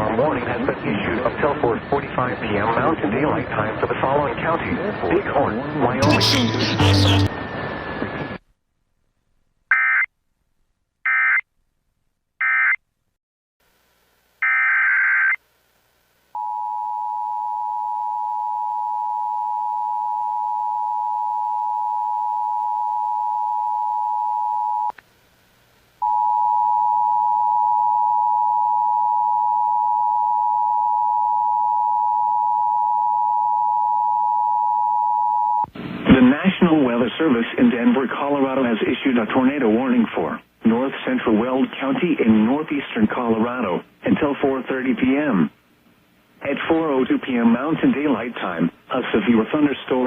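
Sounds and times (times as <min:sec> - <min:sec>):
digital data bursts: 0:06.0 - 0:07.3
two-tone attention signal: 0:06.0 - 0:07.4.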